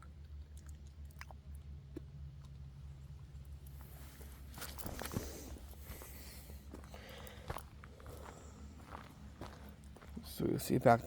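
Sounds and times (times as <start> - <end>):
footsteps on forest trail: 3.9 - 10.5.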